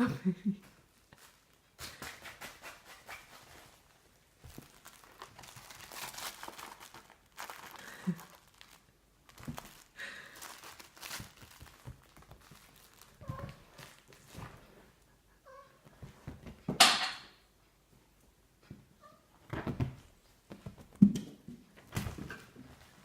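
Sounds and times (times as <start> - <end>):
rustling and crinkling: 0.6 - 16.8, 19.4 - 23.0
kittens scrabbling and scratching: 0.7 - 15.0, 19.4 - 23.0.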